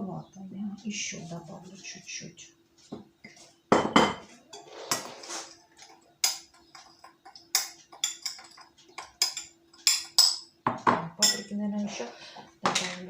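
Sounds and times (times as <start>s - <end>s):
utensils and dish clinking: 3.8s - 13.0s.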